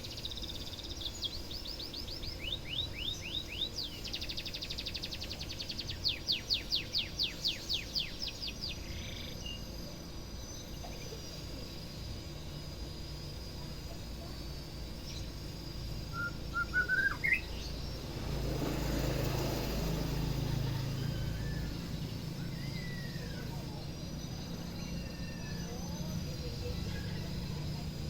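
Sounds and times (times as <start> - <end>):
bird whistling song: 0.0 - 9.6, 16.0 - 18.2, 20.7 - 26.1.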